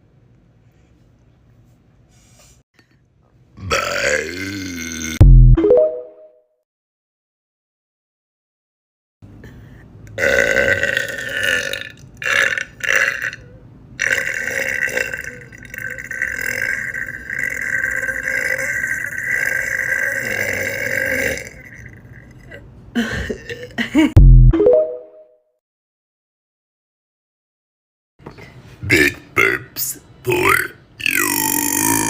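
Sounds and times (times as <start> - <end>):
woman burping: 3.6 - 5.2, 10.2 - 24.2, 31.0 - 32.0.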